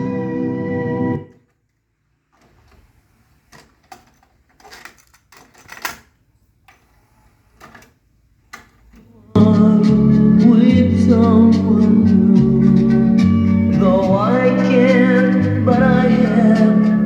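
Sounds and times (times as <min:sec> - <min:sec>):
faint clicks and rustles: 0:01.3 - 0:09.2.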